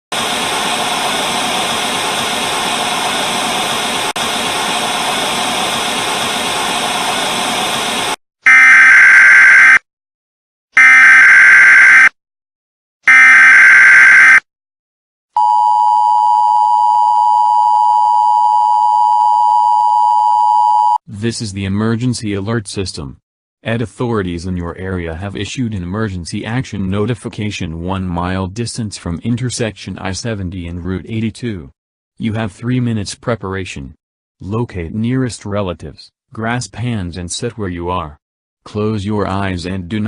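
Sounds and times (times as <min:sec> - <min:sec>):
data tone bursts: 0:08.5 - 0:09.8, 0:10.8 - 0:12.1, 0:13.1 - 0:14.4
two-tone attention signal: 0:08.5 - 0:09.8, 0:10.8 - 0:12.1, 0:13.1 - 0:14.4.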